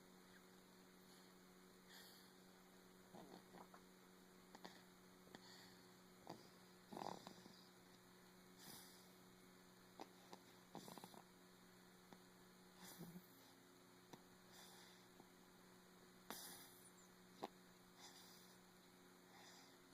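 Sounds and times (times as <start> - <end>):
steady electrical hum: 0.0 - 19.9
faint breathy snoring: 1.0 - 3.8, 4.5 - 7.9, 8.5 - 9.3, 9.9 - 11.3, 12.7 - 13.6, 14.5 - 15.3, 16.2 - 19.9.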